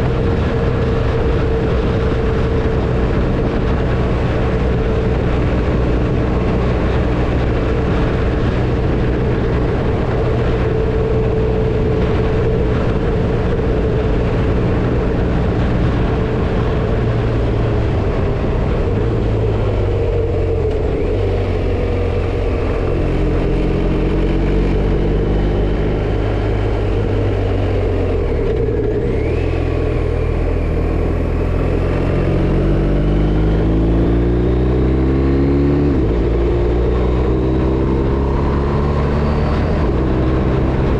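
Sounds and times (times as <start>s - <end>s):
motorcycle engine running: 0.0s - 40.9s
wind and road noise: 0.0s - 40.9s.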